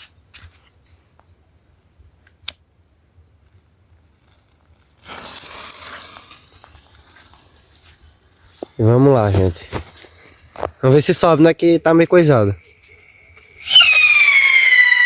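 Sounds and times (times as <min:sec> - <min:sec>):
insects chirring: 0:00.0 - 0:15.0
burst of hissing noise: 0:13.6 - 0:15.0.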